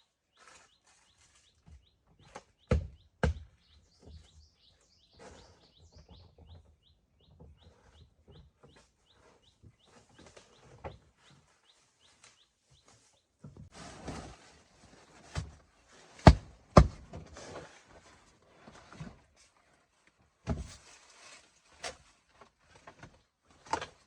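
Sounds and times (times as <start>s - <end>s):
bird chirping: 0.3s - 13.2s.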